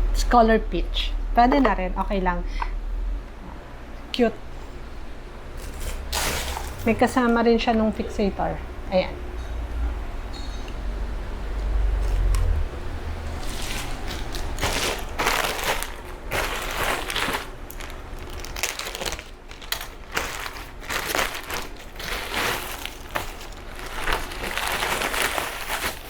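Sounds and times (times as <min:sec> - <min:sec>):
plastic packaging crinkling: 0:13.2 - 0:26.0.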